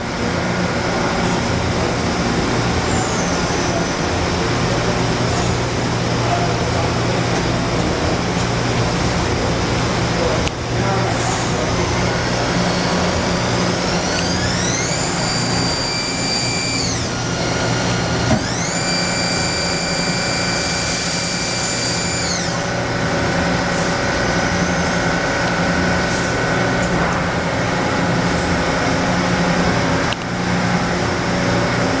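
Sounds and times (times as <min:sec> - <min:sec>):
constant machine hum: 0:00.0 - 0:32.0
lathe spindle motor whining: 0:11.6 - 0:26.8.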